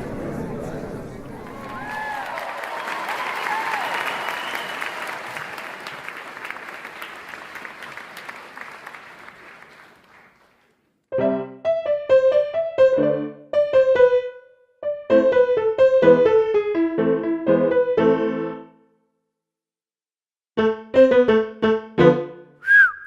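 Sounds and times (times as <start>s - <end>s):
audience applause: 0.0s - 10.8s.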